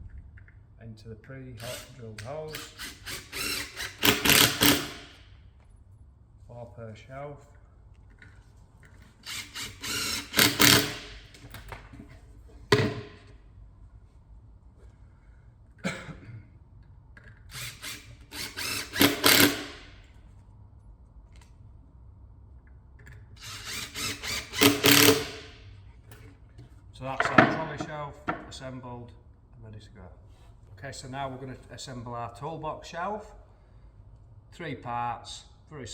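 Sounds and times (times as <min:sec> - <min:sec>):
power driver driving screws: 0:01.6 - 0:05.2, 0:09.2 - 0:11.4, 0:17.5 - 0:20.0, 0:23.4 - 0:25.6.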